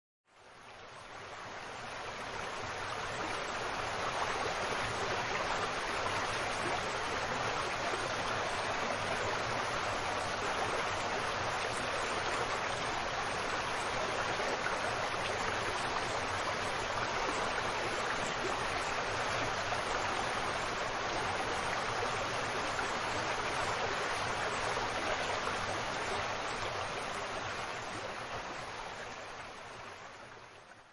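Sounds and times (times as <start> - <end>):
river water rushing: 0.4 - 30.9.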